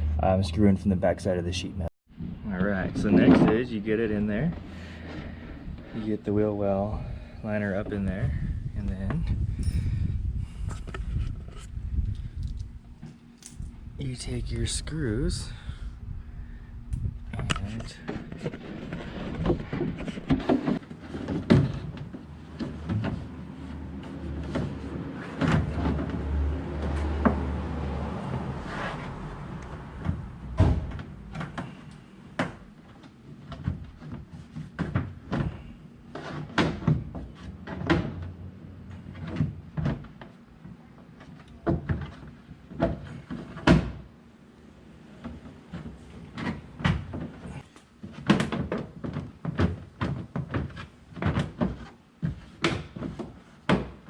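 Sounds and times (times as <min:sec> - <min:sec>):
low steady hum: 0:00.0 - 0:24.9.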